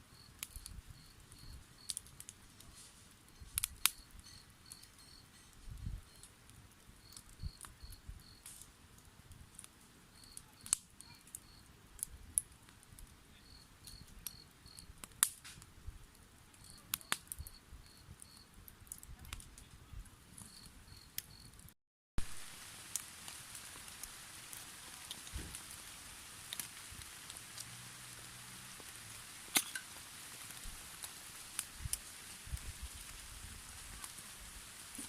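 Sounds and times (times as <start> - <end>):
cricket chirping: 0.2 - 2.0, 3.9 - 5.3, 7.0 - 8.4, 10.2 - 10.4, 11.0 - 11.6, 13.4 - 14.9, 17.4 - 18.5, 20.5 - 21.6.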